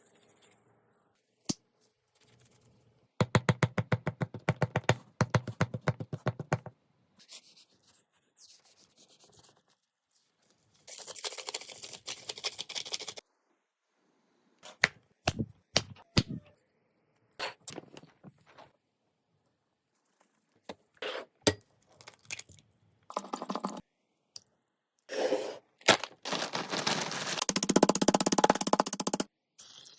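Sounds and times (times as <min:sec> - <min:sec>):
sharp clicks and taps: 0:27.4 - 0:29.3.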